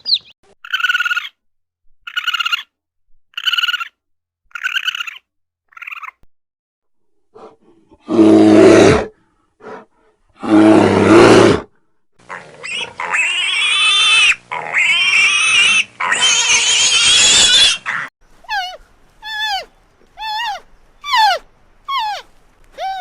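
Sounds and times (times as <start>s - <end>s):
high-pitched wavering animal cries: 4.6s - 5.2s, 12.6s - 23.0s
low animal calls: 15.6s - 23.0s.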